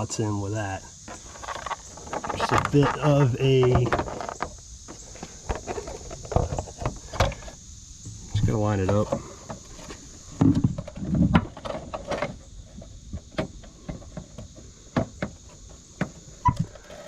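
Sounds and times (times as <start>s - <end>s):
dull thumps: 1.0s - 16.8s.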